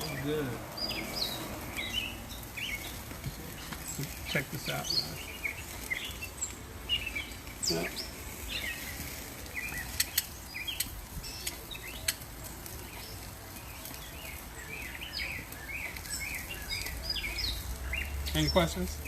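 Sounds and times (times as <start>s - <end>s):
small birds chirping: 0.0s - 19.0s
sharp clicks: 9.8s - 12.3s.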